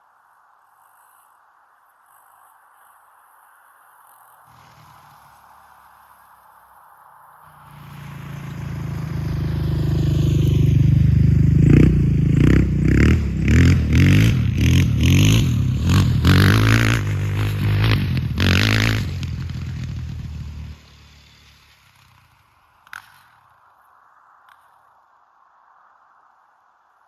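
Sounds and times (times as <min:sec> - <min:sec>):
quad engine revving: 0:04.5 - 0:05.9, 0:07.5 - 0:23.2.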